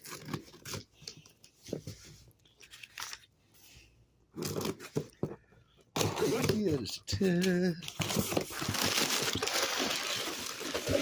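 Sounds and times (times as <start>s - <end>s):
cardboard box tearing and rustling: 7.9s - 11.0s.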